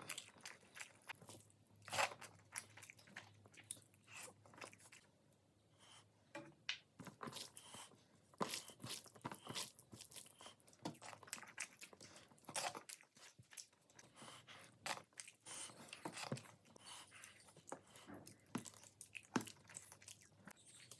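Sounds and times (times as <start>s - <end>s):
chewing crunchy food: 0.0s - 5.2s, 7.0s - 20.9s.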